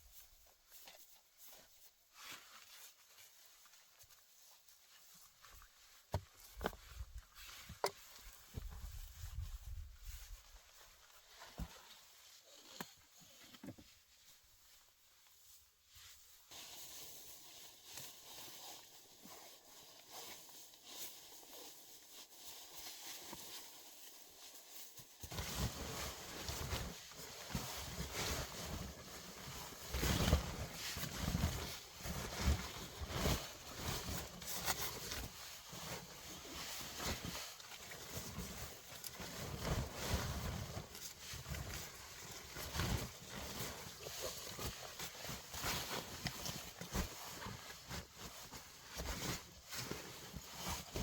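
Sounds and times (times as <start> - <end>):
crunching and rustling: 25.3 - 51.0.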